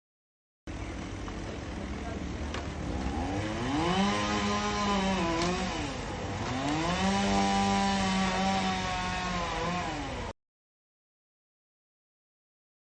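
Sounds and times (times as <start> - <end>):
small engine running at high revs: 1.6 - 10.4.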